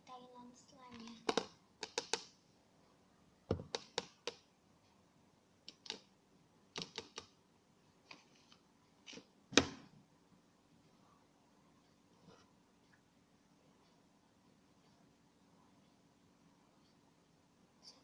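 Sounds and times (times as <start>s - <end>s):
small objects clicking and knocking: 1.0s - 2.3s.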